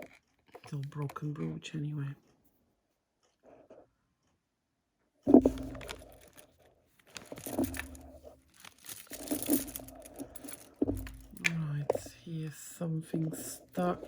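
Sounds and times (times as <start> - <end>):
plastic bag crinkling: 5.3 - 12.1.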